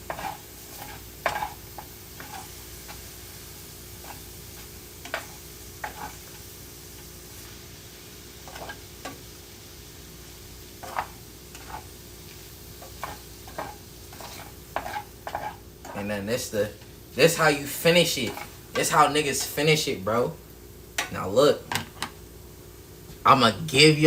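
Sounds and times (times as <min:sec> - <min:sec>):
utensil scraping a pan: 0:00.0 - 0:03.1, 0:04.0 - 0:06.4, 0:08.4 - 0:09.2, 0:10.8 - 0:12.0, 0:12.8 - 0:16.1, 0:17.3 - 0:19.7
food sizzling in a frying pan: 0:00.0 - 0:24.0.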